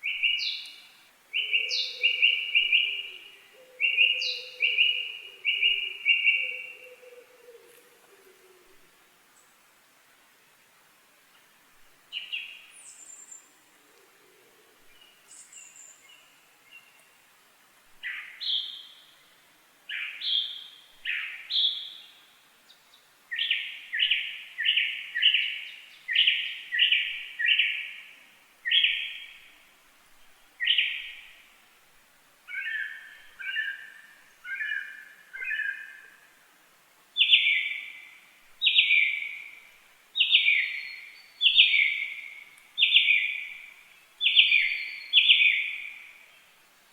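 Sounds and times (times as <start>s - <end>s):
bird calling: 0.0s - 8.8s, 32.5s - 36.2s, 37.2s - 46.2s.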